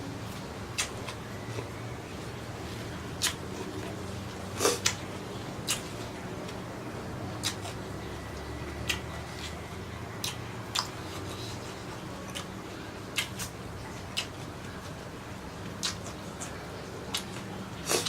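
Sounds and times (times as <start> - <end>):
mouth smacks: 15.8 - 16.5.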